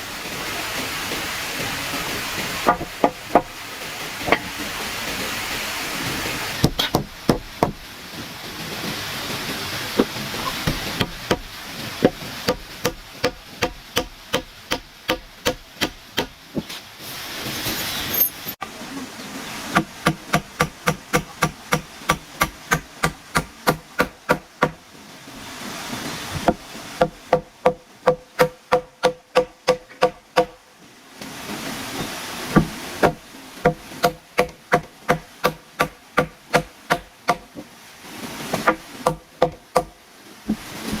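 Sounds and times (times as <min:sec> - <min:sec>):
hammer driving nails into wood: 0:06.6 - 0:07.8.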